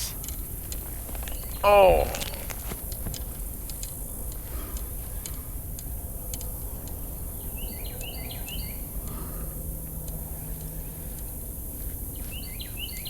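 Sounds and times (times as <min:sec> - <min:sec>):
songbird chirping: 0:00.0 - 0:03.0, 0:07.4 - 0:08.9
faint ticks: 0:00.0 - 0:13.0.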